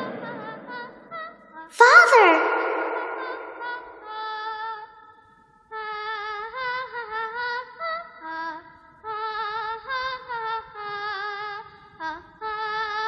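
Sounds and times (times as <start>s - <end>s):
child-like voice singing wordlessly: 1.8s - 3.9s.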